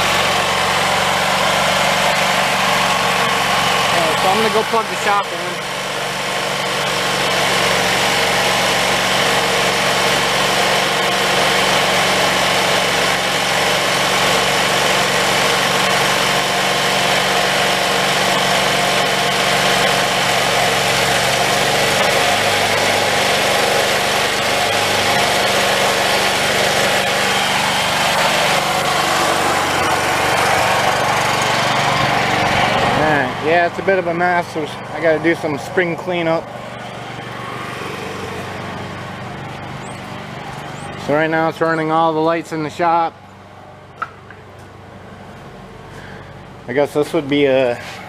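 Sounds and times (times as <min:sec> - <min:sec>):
generator engine running: 0:00.0 - 0:48.0.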